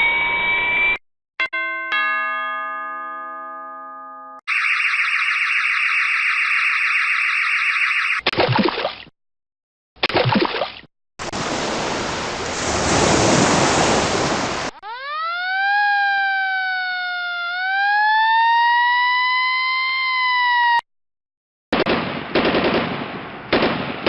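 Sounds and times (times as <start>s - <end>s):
siren wailing: 4.5s - 8.2s, 14.8s - 20.8s.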